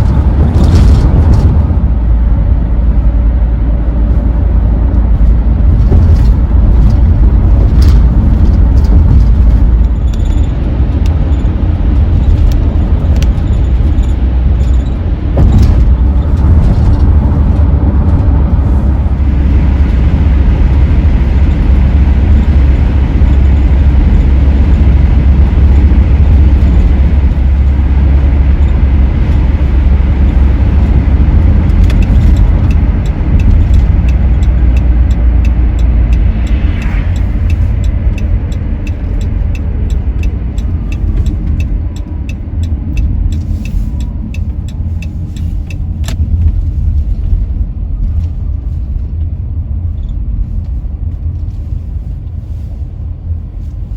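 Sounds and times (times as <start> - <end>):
van engine and road noise: 0.0 - 53.9
faint regular ticking: 31.7 - 46.4.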